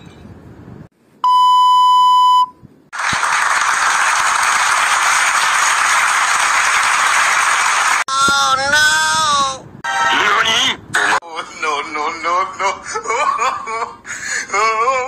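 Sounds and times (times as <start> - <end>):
steady electronic beep: 1.2 - 2.6
loud static hiss: 3.0 - 8.0.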